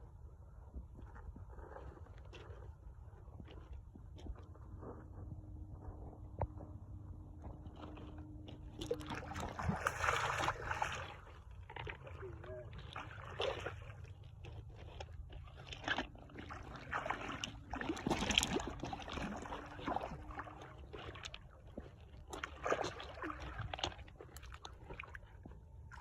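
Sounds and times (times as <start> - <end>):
water sloshing and splashing: 7.3 - 26.0.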